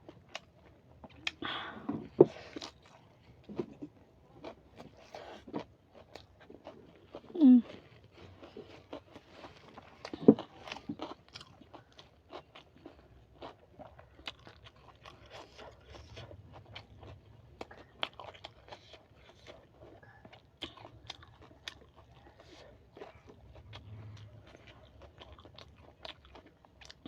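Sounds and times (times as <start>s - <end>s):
chewing with crunches: 0.0s - 27.0s.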